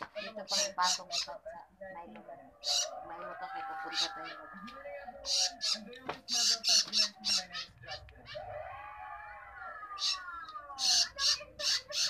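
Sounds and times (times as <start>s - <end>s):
baby bird rasping squawks: 0.0s - 1.4s, 2.6s - 3.0s, 3.7s - 4.6s, 5.2s - 8.4s, 10.0s - 12.0s.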